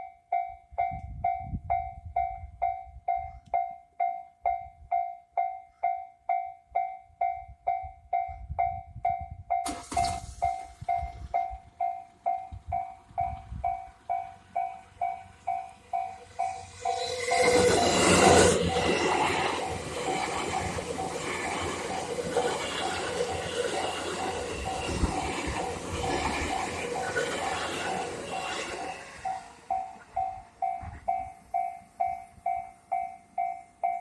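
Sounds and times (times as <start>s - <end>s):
train passing: 9.7s - 34.0s.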